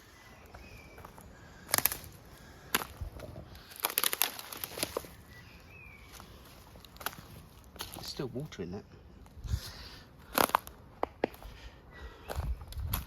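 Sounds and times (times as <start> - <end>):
footsteps crunching dry leaves: 0.4 - 8.4.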